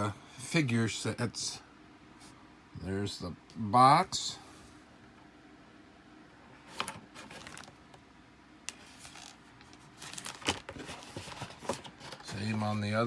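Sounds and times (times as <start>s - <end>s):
cardboard box being handled: 6.8s - 7.7s, 9.0s - 12.8s.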